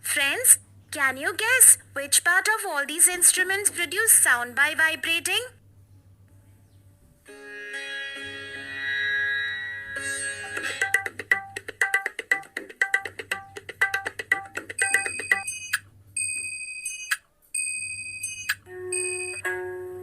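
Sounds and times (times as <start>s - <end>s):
high ringing notes: 7.3s - 11.1s, 14.8s - 20.0s
held pitched tone: 14.8s - 20.0s.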